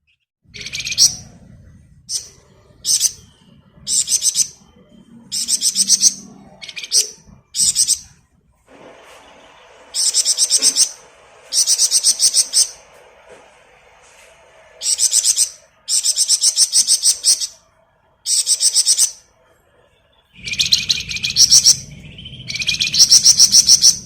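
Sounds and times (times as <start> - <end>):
songbird rattling trills: 2.1 - 4.6, 9.9 - 12.8, 14.8 - 17.6, 18.3 - 19.2, 20.4 - 24.0.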